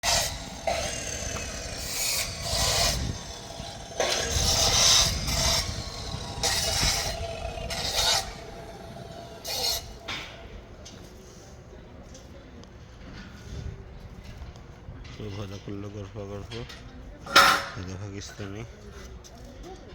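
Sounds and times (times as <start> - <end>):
scraping on steel: 0.0 - 10.5, 17.3 - 17.9.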